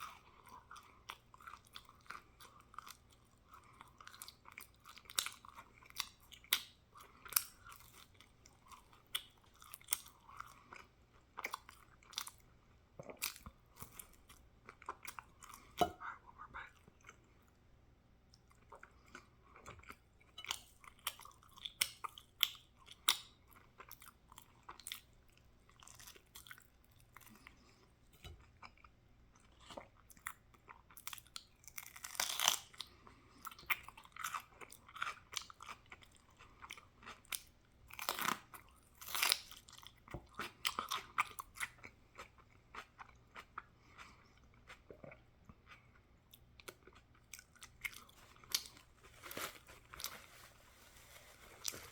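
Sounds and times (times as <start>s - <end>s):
person chewing crunchy food: 0.0s - 16.0s, 18.3s - 51.9s.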